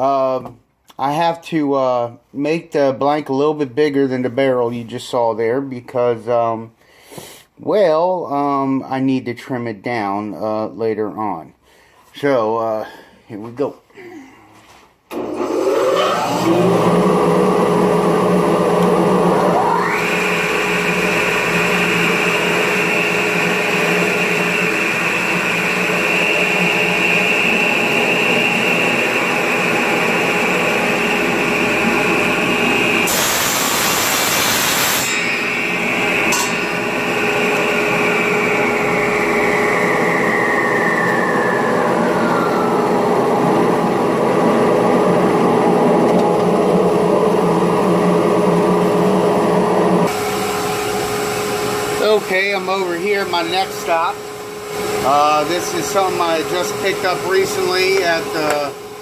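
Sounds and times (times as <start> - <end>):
power tool motor running: 15.1 - 41.2
high-pitched whine: 18.6 - 59.0
loud hiss: 20.3 - 41.6.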